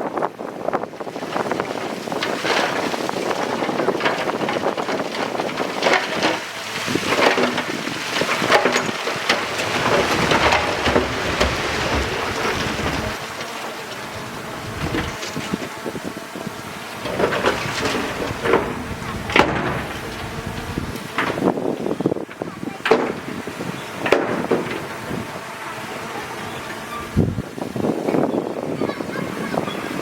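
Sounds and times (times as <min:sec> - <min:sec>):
wind buffeting microphone: 0:00.0 - 0:30.0
heavy machinery rumbling: 0:00.4 - 0:30.0
machinery clanks and rattles: 0:01.2 - 0:16.2, 0:16.9 - 0:25.4.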